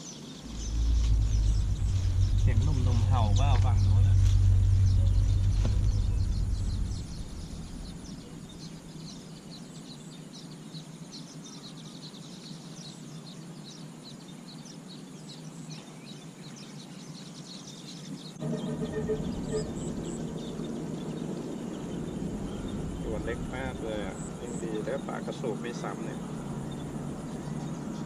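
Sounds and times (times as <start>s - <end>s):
small birds chirping: 0.0s - 28.0s
deep rumble: 0.2s - 9.2s, 18.4s - 28.0s
low background hum: 0.2s - 9.4s, 18.4s - 28.0s.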